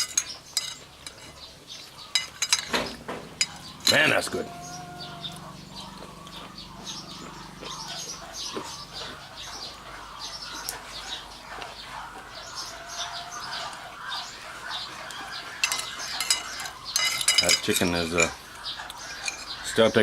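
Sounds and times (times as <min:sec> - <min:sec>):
utensil clinking against pan: 0:00.0 - 0:01.4, 0:02.1 - 0:04.0, 0:15.6 - 0:18.4
birds chirping: 0:00.0 - 0:20.0.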